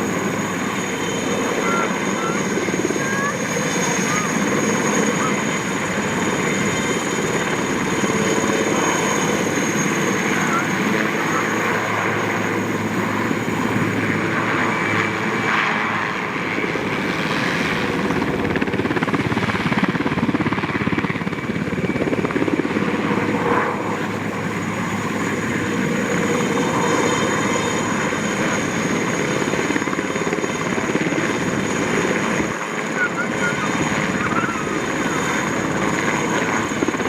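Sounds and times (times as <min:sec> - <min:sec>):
helicopter rotor chopping: 0:00.0 - 0:37.0
high turbine whine: 0:00.0 - 0:37.0.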